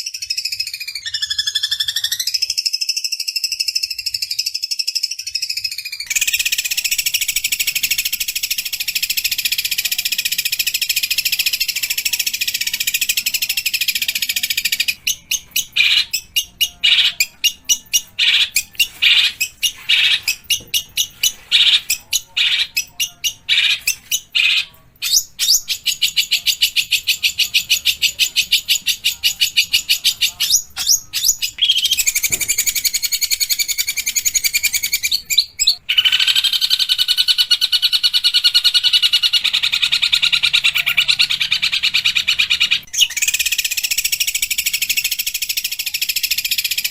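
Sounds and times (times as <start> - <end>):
shrike chattering song: 0.0 - 46.9.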